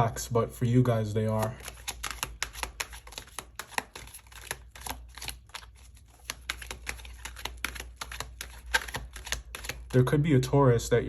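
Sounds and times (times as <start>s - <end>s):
cards being shuffled: 1.2s - 10.0s.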